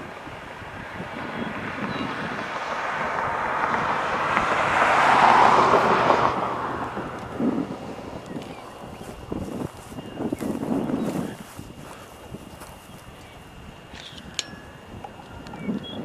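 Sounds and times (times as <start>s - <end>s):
vehicle passing by: 0.0s - 11.2s.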